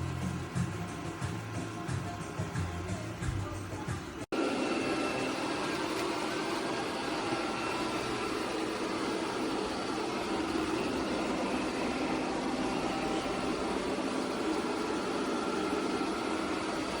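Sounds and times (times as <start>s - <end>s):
robot vacuum motor humming: 4.4s - 17.0s.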